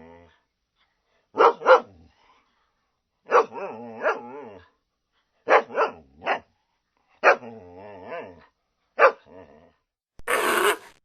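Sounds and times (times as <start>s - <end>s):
dog growling: 0.0s - 0.4s
dog barking: 1.3s - 1.9s, 3.3s - 4.4s, 5.4s - 6.5s, 7.2s - 7.4s, 9.0s - 9.2s.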